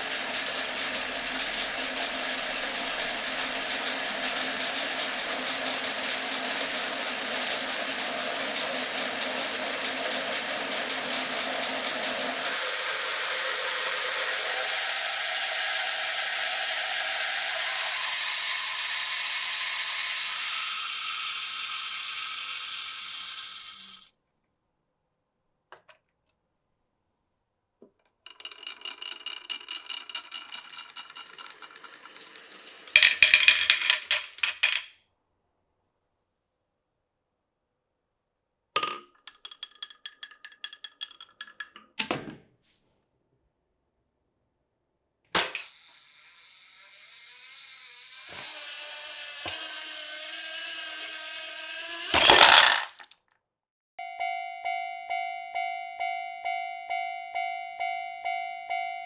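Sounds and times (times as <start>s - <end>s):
marbles clattering: 0.0s - 24.1s, 28.3s - 34.9s, 38.8s - 41.7s, 45.5s - 53.2s
marbles rolling on wooden track: 0.0s - 24.1s, 28.2s - 34.9s, 38.8s - 41.8s, 45.4s - 53.2s, 57.7s - 59.0s.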